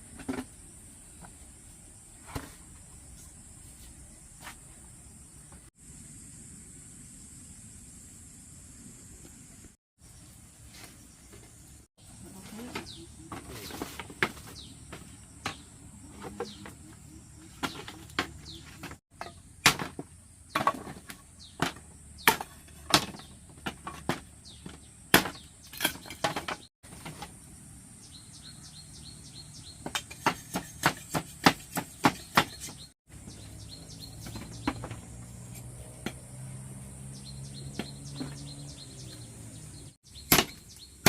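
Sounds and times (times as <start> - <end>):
insect chirps: 0.0 - 12.2
bird chirps: 12.5 - 19.0, 31.9 - 35.1, 37.1 - 41.0.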